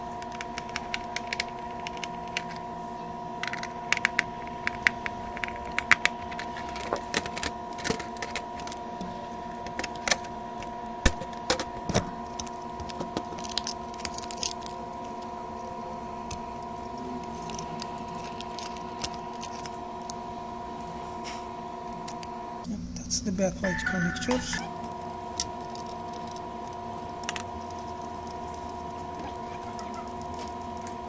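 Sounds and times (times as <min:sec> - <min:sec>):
electrical hum: 0:00.0 - 0:31.0
tools and parts clicking and rattling: 0:03.4 - 0:15.7, 0:17.3 - 0:20.2, 0:25.3 - 0:31.0.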